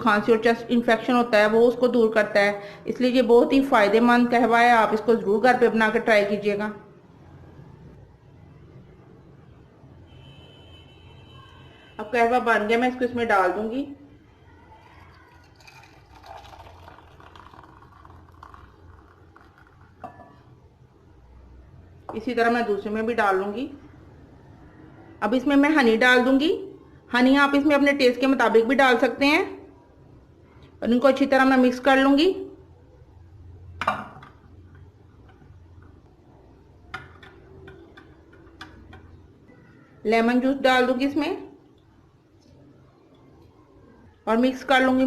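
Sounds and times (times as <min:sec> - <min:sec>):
tea trickling into a cup: 0:14.8 - 0:20.5.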